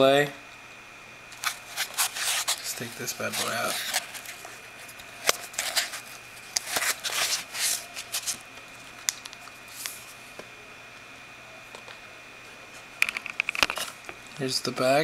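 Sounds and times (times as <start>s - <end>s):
packaging rustling: 1.4s - 10.1s.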